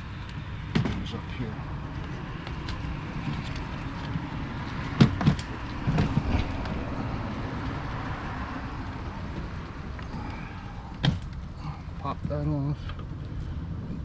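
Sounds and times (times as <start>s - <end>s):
steady low background rumble: 0.0s - 14.0s
plastic parts knocking and clicking: 4.9s - 6.7s.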